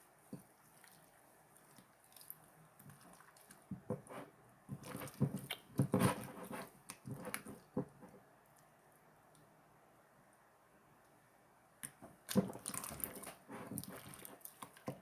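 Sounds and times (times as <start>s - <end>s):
slime squelching: 0.4s - 4.1s, 11.8s - 15.0s.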